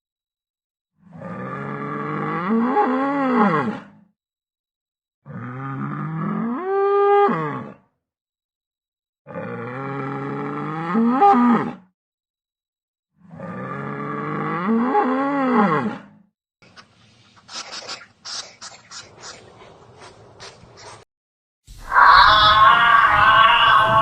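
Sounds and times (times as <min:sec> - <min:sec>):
cow mooing: 0:13.3 - 0:16.0, 0:21.9 - 0:24.0.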